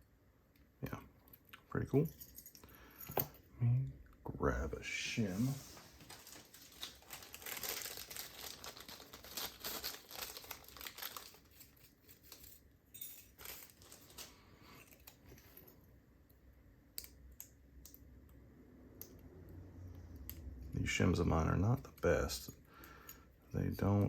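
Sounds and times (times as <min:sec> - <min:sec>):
crinkling and rustling: 0:05.2 - 0:15.8.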